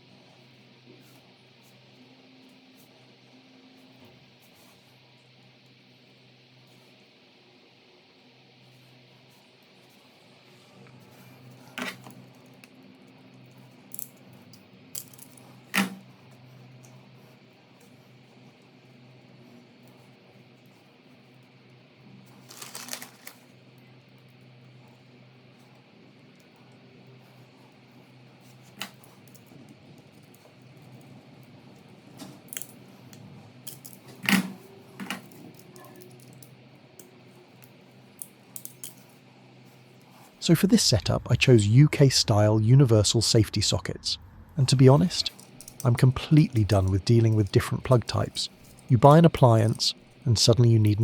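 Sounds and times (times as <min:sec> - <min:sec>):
low steady hum: 0:22.6 - 0:51.0
small hard parts clinking: 0:45.1 - 0:48.9
metallic clicks of tools: 0:45.2 - 0:47.6.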